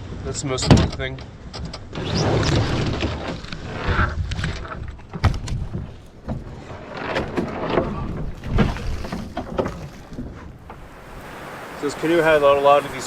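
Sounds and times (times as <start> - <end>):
knocks and scrapes on wooden canoe: 0.8 - 11.0.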